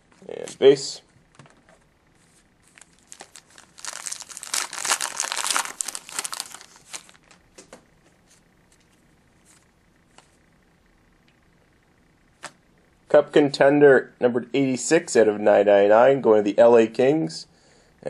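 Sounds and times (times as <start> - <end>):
wrapper tearing and crinkling: 2.7 - 7.4.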